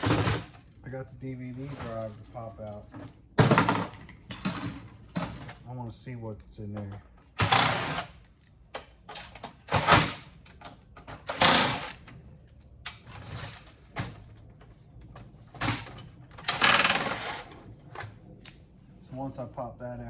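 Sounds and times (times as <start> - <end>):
metal and plastic parts rattling: 8.7 - 18.2.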